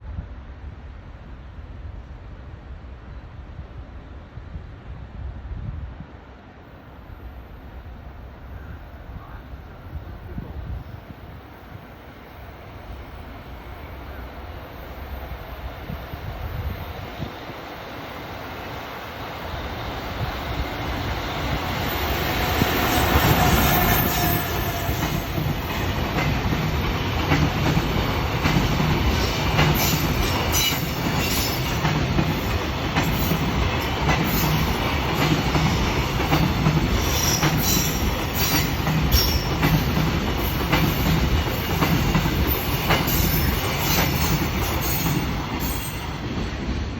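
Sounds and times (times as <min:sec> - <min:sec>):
freight train rumbling past: 0:00.0 - 0:46.9
wheels clickety-clack over rail joints: 0:20.2 - 0:46.9.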